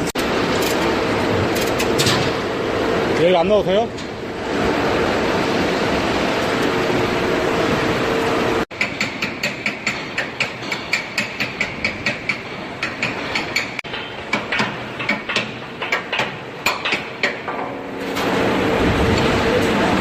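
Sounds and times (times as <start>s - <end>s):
hammer striking steel: 8.7s - 18.5s.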